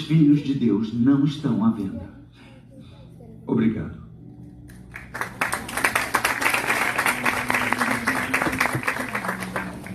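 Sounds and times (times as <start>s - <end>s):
audience applauding: 4.8s - 9.9s.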